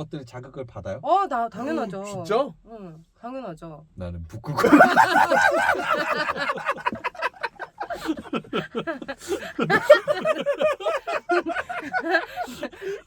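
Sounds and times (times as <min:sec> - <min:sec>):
people laughing: 0:04.4 - 0:13.0.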